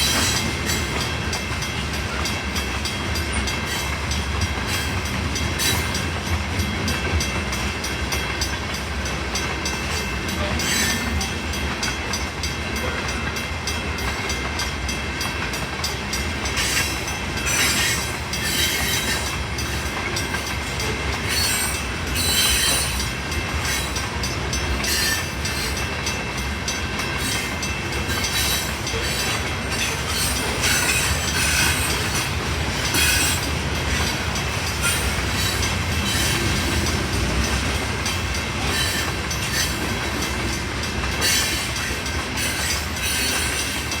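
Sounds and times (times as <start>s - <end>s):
wheels clacking over rail joints: 0.0s - 44.0s
wheel squeals: 17.5s - 19.2s, 21.3s - 23.0s, 42.4s - 43.8s.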